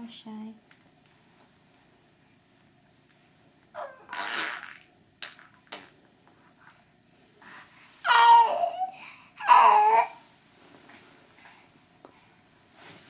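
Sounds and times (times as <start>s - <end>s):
pet making fart-like noises: 3.8s - 6.0s.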